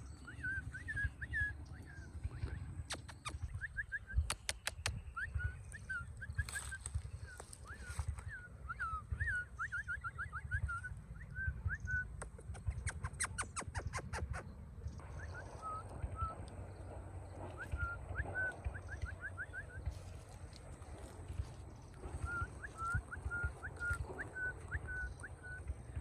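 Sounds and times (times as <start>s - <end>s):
low rumble: 0.0s - 12.8s, 14.4s - 26.0s
sharp clicks: 2.8s - 5.1s.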